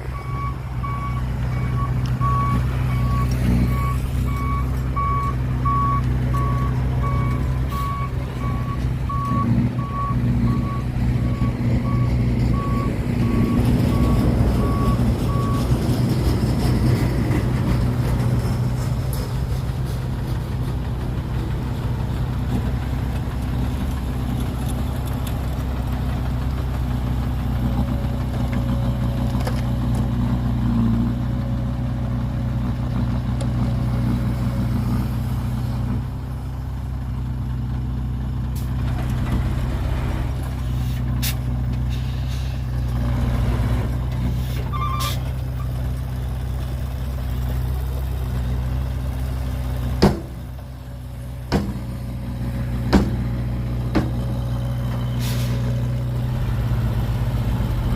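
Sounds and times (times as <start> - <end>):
heavy diesel engine running: 0.0 - 57.9
sharp knocks: 50.0 - 50.4, 52.9 - 53.2.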